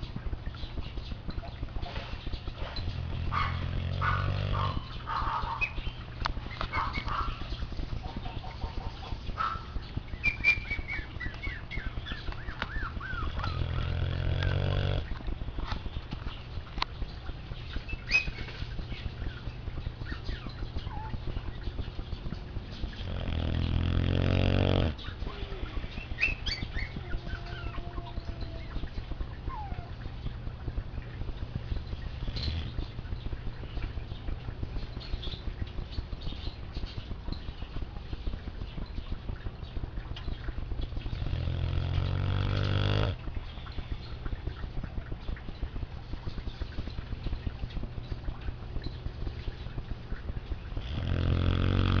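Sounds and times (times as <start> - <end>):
dog snoring: 2.5 - 4.9, 12.7 - 15.2, 22.8 - 25.7, 32.0 - 32.9, 41.1 - 43.2, 50.7 - 52.0.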